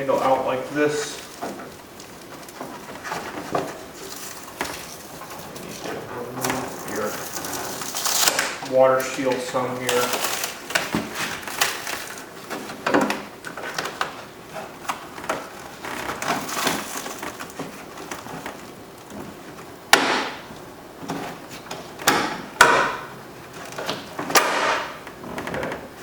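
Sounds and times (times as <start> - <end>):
plastic sheet crackling and rustling: 0.0 - 19.8
sharp knocks: 19.9 - 20.5, 22.0 - 23.1, 24.3 - 25.0.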